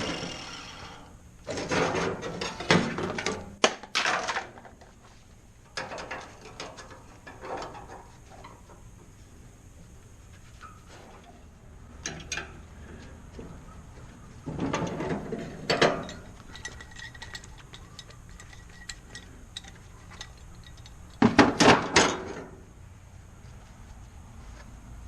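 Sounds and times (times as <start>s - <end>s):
metal tools clinking and knocking: 14.6s - 21.2s.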